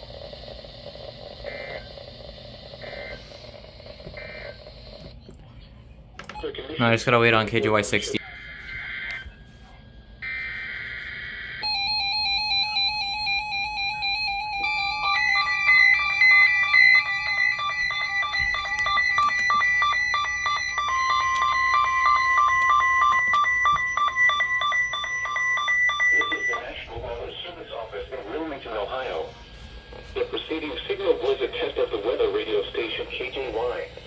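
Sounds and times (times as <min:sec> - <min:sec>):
beeping alarms at different pitches: 0:06.3 - 0:27.0
coded alert tones: 0:11.6 - 0:26.8
pulsing beep: 0:11.6 - 0:26.8.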